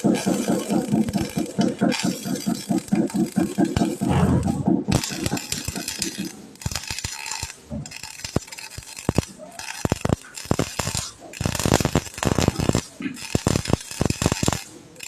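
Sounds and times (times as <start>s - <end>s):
sharp metallic clicks: 0.0s - 14.6s
welding crackling hiss: 0.0s - 15.0s.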